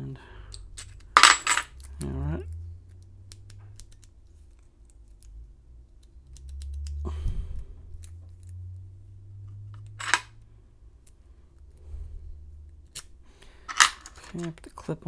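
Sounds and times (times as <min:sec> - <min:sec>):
padlock parts clicking and rubbing: 0:00.5 - 0:07.0, 0:07.9 - 0:08.6, 0:12.8 - 0:14.8.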